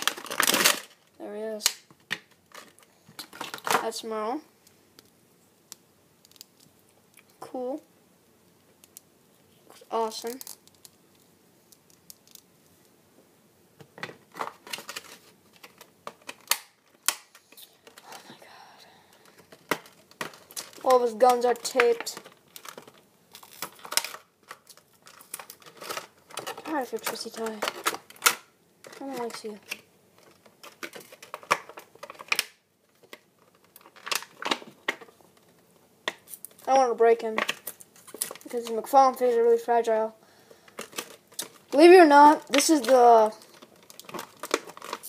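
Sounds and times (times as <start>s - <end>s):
hard plastic clicking and rustling: 13.8s - 18.2s, 19.2s - 39.0s, 40.7s - 45.0s.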